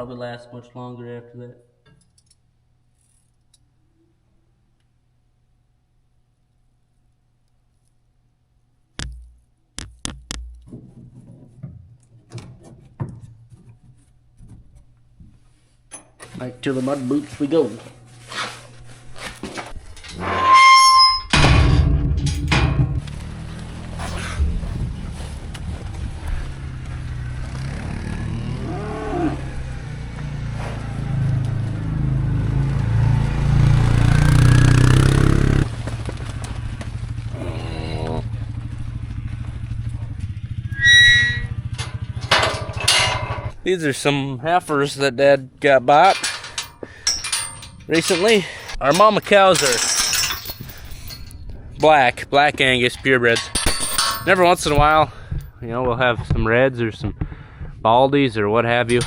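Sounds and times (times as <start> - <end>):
sharp knocks with heavy thumps: 9.0 - 11.1
objects clattering and rustling: 10.6 - 20.2, 21.4 - 27.7, 46.0 - 51.6, 53.3 - 55.6
steady low hum: 21.3 - 28.6
cattle mooing: 23.3 - 30.0, 37.3 - 38.4.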